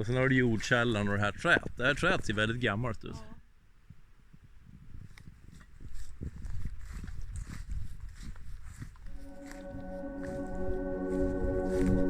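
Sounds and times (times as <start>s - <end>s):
footsteps over rough ground: 4.9s - 12.0s
music with sustained chords: 9.2s - 12.0s.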